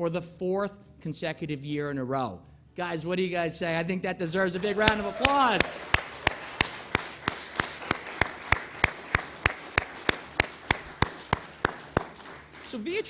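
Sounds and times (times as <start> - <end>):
audience applauding: 4.6 - 13.0
loud even hand claps: 4.6 - 13.0.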